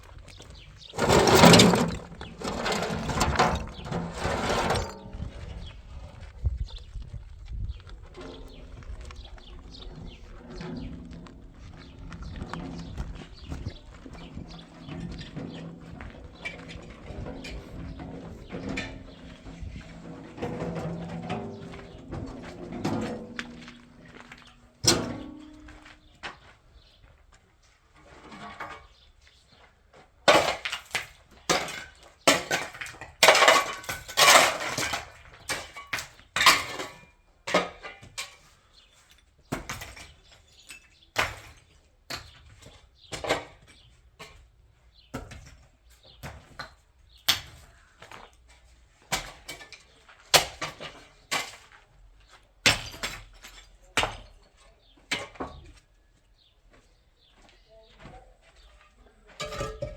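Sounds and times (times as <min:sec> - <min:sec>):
hard objects clattering: 0:00.6 - 0:05.7, 0:08.2 - 0:26.5, 0:30.3 - 0:38.5, 0:59.4 - 0:59.9.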